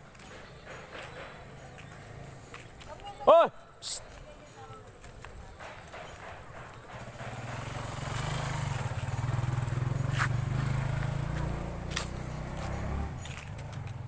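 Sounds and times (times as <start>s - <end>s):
vehicle engine passing by: 6.9s - 14.0s.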